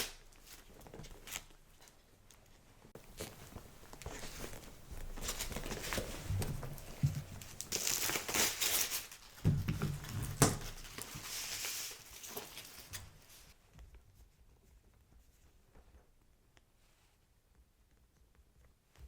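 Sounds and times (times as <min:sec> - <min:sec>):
packing material crinkling: 0:00.0 - 0:13.6.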